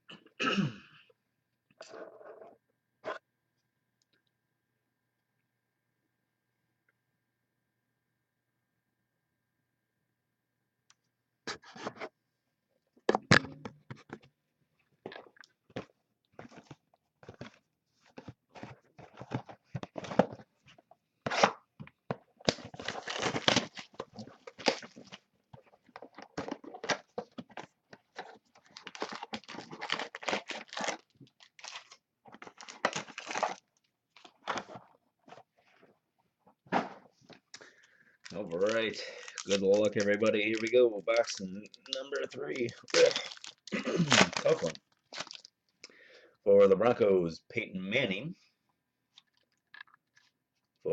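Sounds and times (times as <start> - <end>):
plastic wrapping tearing and crinkling: 22.4 - 25.2, 28.0 - 34.7, 38.2 - 45.5.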